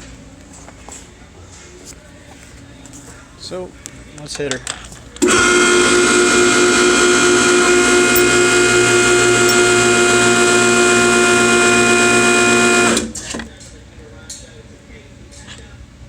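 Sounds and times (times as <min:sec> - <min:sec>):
hydraulic pump whine: 0:05.2 - 0:13.5.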